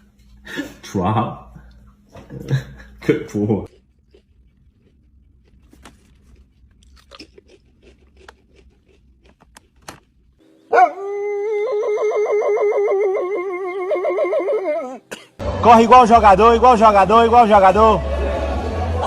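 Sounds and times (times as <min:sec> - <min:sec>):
faint crunching and clicking: 0:04.1 - 0:10.4
dog howling: 0:10.7 - 0:15.1.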